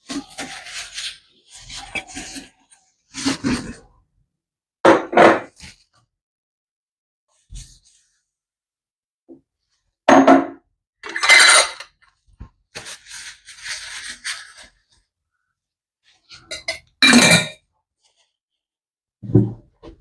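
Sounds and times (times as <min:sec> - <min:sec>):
kitchenware clattering: 0:10.1 - 0:11.9, 0:16.4 - 0:17.6.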